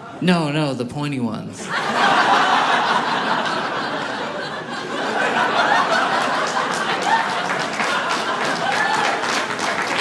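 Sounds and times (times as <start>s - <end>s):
audience laughing: 1.6s - 10.0s
people clapping: 5.4s - 10.0s.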